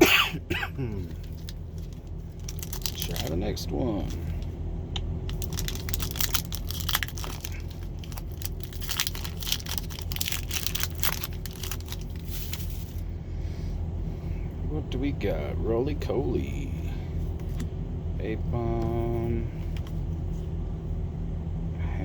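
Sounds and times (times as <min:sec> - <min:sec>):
steady low hum: 0:00.0 - 0:22.0
foil wrapper tearing and crinkling: 0:01.0 - 0:03.4, 0:05.3 - 0:13.0.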